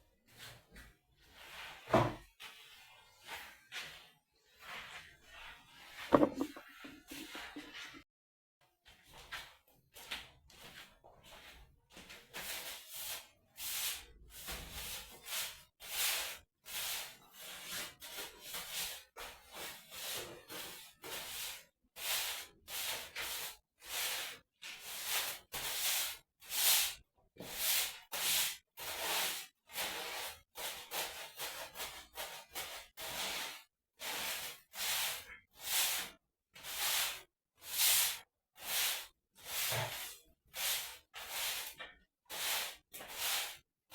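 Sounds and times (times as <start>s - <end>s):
broom sweeping a hard floor: 0.2s - 8.0s, 8.8s - 43.7s.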